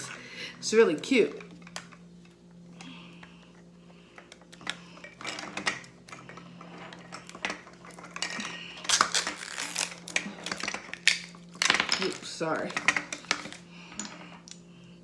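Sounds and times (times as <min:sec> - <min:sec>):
steady low hum: 0:00.0 - 0:15.0
plastic toys clicking and clattering: 0:07.1 - 0:14.3.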